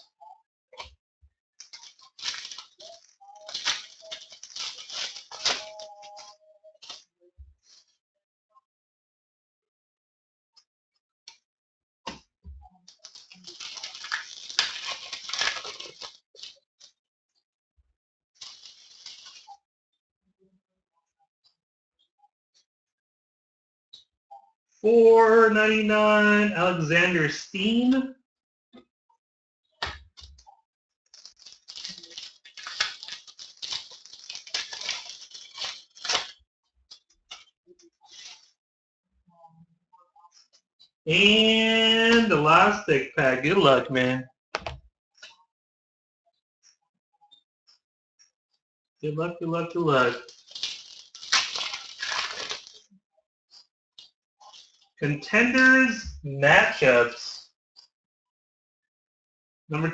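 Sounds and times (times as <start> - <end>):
wrapper crinkling and rustling: 1.6 - 7.1, 12.9 - 16.6, 18.4 - 19.6, 31.1 - 37.5, 38.1 - 38.5, 50.0 - 52.9, 54.5 - 54.9.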